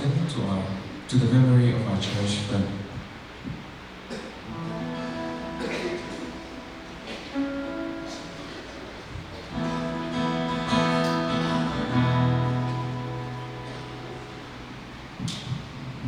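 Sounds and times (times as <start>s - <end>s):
acoustic guitar strumming slow chords: 4.4s - 16.0s.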